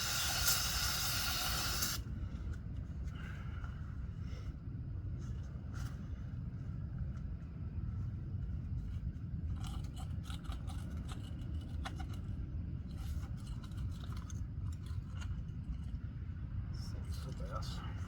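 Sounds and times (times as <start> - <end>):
steady low rumble: 0.0 - 18.0
metal clicks and scrapes: 9.5 - 15.8.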